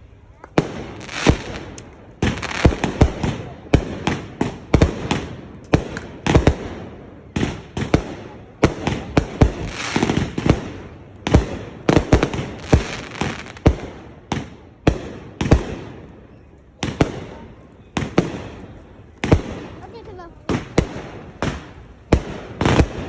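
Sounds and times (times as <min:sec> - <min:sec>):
fireworks crackling: 0:00.0 - 0:23.0
fireworks bangs: 0:00.4 - 0:23.0.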